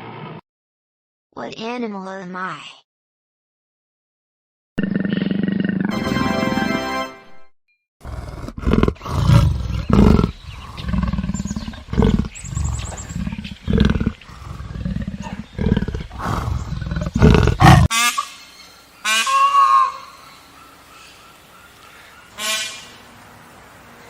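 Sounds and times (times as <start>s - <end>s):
tiger roaring and growling: 4.8s - 5.9s, 8.0s - 17.9s.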